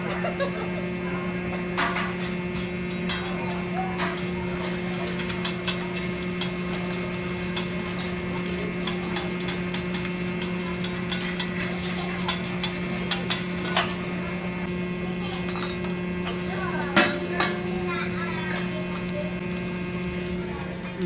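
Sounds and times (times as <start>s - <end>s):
steady hum: 0.0s - 21.0s
metal spatulas scraping griddle: 1.8s - 19.6s.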